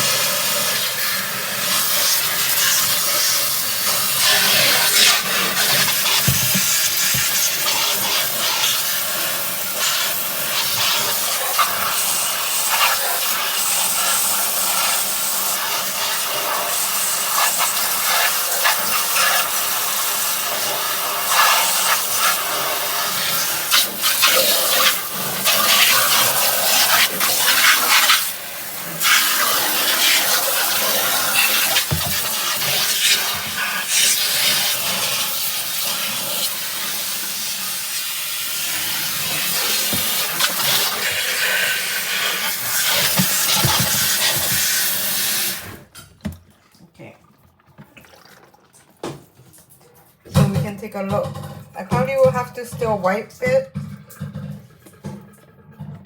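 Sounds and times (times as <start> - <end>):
shower head spraying water: 0.0 - 19.9, 29.0 - 35.2, 37.8 - 45.8.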